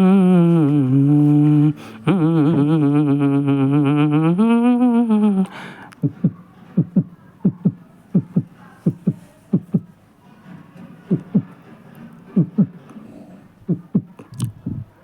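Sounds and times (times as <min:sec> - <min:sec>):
hummed vocal line: 0:00.0 - 0:07.0
heartbeat-like low thumps: 0:06.0 - 0:09.9, 0:12.4 - 0:12.8, 0:13.6 - 0:14.9.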